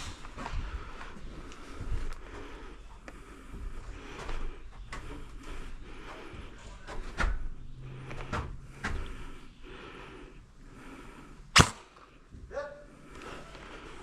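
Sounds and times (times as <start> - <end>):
airsoft gun shots: 11.6 - 12.0.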